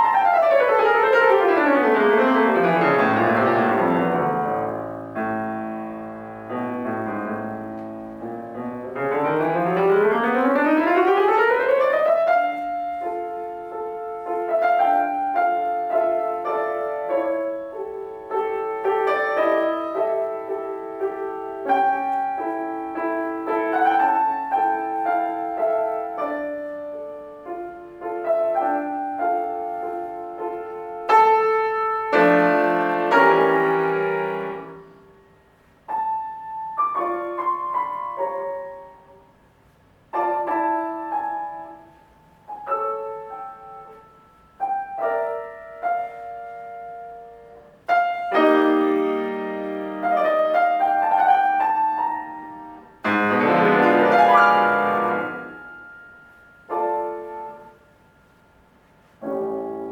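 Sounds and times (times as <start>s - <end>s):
solo piano classical music: 0.0s - 59.9s.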